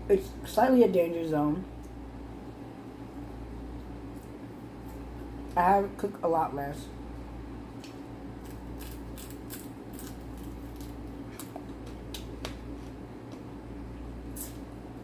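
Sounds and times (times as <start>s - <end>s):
steady low hum: 0.0s - 15.0s
chewing food crunches: 7.8s - 13.5s.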